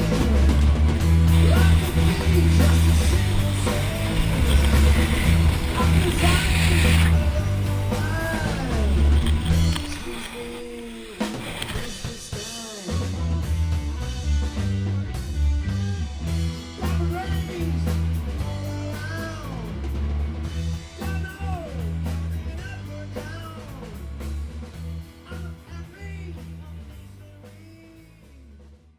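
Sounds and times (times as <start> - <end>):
rock music with singing: 0.0 - 28.9.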